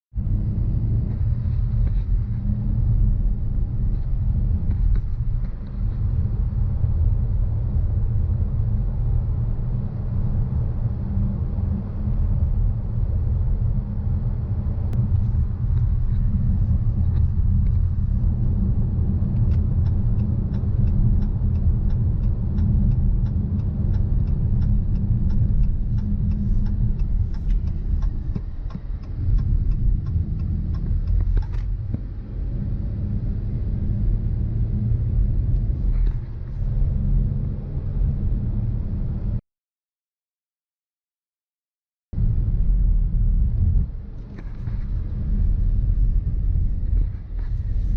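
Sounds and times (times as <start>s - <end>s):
car engine and road noise: 0.1s - 39.4s, 42.2s - 47.9s
light regular ticking: 14.9s - 32.0s.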